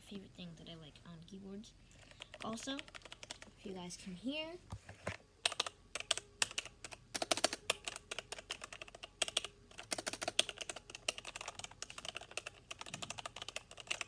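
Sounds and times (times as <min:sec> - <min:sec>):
fast keyboard typing: 0:02.0 - 0:03.5, 0:05.4 - 0:14.0.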